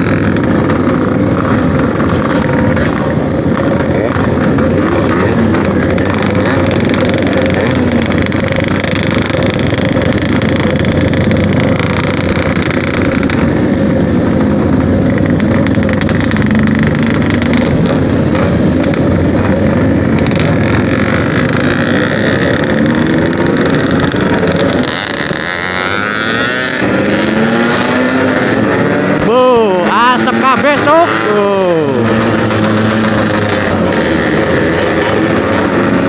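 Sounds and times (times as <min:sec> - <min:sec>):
two-stroke motorcycle engine running: 0:00.0 - 0:36.0.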